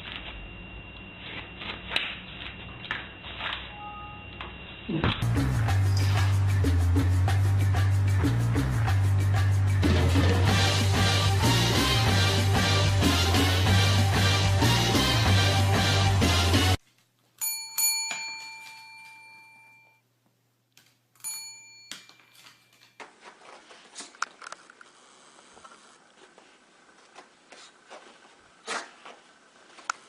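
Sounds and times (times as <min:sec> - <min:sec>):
bell chime strikes: 0:17.4 - 0:20.0.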